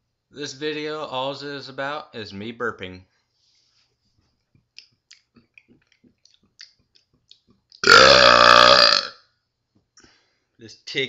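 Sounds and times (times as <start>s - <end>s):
faint mouth clicks: 4.6s - 7.8s
man burping: 7.8s - 9.2s.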